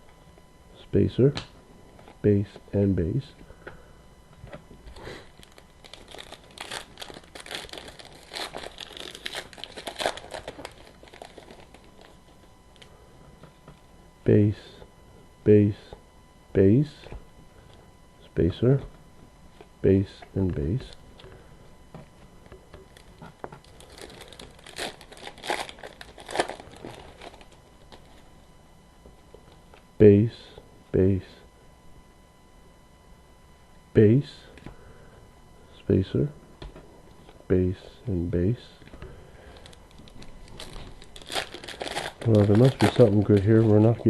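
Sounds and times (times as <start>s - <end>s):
wrapper crinkling: 5.3s - 12.2s, 22.9s - 28.2s, 39.5s - 44.0s.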